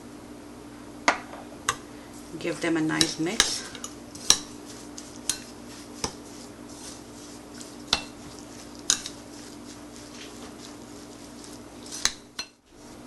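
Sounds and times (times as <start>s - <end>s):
steady low hum: 0.0s - 13.0s
spoon stirring batter in bowl: 2.9s - 13.0s
spoon clinking against bowl: 5.2s - 5.5s, 8.9s - 9.2s.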